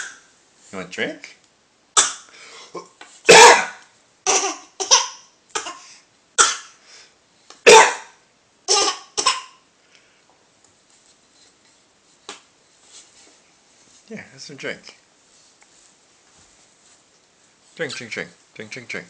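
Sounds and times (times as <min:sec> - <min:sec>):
child coughing: 0:03.3 - 0:06.8, 0:07.7 - 0:08.1, 0:08.7 - 0:09.6.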